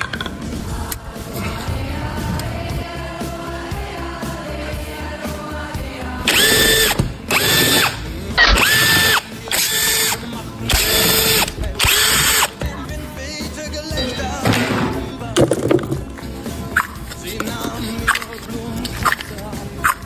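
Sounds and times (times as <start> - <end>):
rattling noise: 0.0 - 3.7
power tool motor whining: 6.3 - 12.6.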